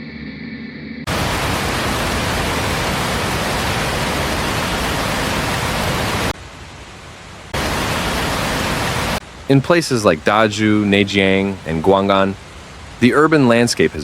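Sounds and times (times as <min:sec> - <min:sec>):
water rushing: 0:01.1 - 0:14.0.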